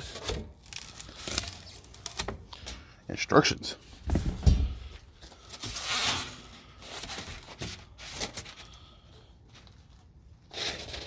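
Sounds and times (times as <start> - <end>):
paper or plastic rustling: 0.0 - 2.6.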